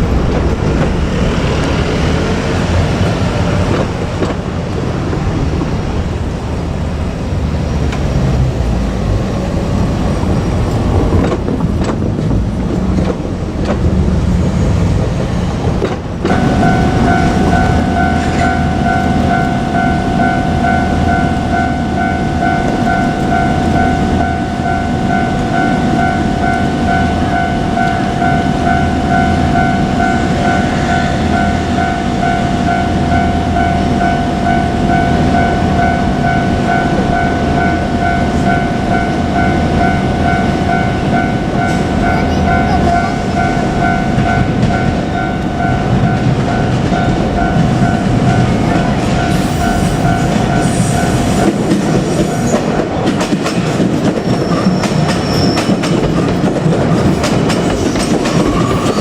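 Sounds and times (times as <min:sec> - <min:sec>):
electric train rumble: 0:00.0 - 0:59.0
level crossing electronic bell: 0:16.3 - 0:51.6.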